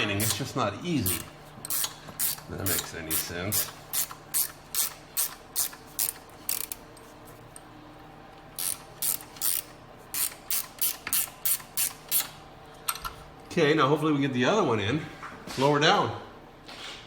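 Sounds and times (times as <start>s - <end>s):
ratchet wrench clicking: 0.0s - 0.4s, 1.0s - 6.8s, 8.6s - 12.4s.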